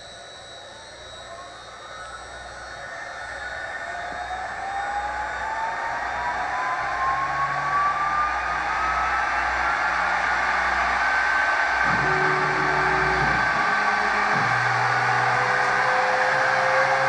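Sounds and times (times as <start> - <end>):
machine whirring with whine: 0.0 - 17.0
low motor tones: 4.0 - 17.0.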